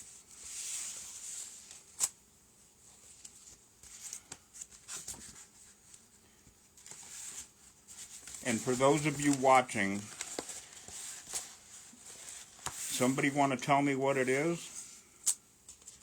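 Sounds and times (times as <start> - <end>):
packaging rustling: 6.8 - 13.0.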